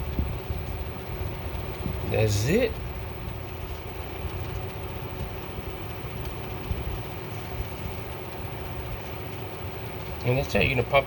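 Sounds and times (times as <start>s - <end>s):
low mechanical hum: 0.0s - 11.0s
faint clicks: 3.5s - 10.4s.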